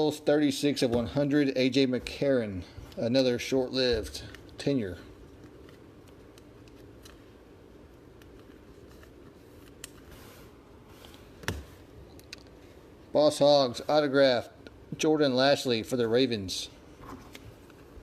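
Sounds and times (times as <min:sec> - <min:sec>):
low background hum: 0:00.0 - 0:18.0
trading cards rustling and clicking: 0:04.0 - 0:10.1.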